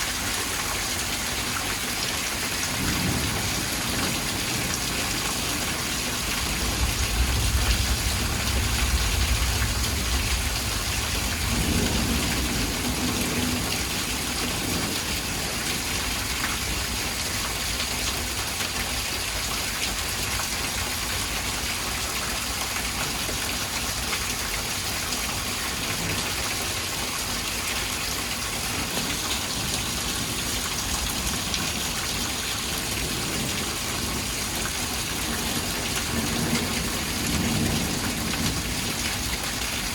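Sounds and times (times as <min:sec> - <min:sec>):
heavy rain: 0:00.0 - 0:39.9
thunder rumble: 0:02.7 - 0:17.7, 0:27.8 - 0:39.9.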